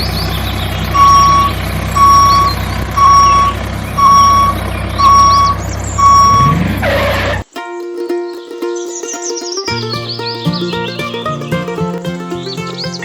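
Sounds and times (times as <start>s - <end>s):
engine humming: 0.0s - 13.0s
reversing alarm beeping: 0.9s - 7.4s
plucked-string music: 6.0s - 13.0s.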